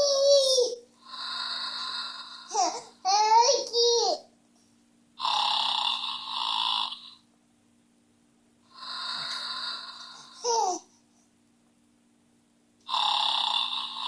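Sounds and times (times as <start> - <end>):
horse snoring: 12.9 - 14.0.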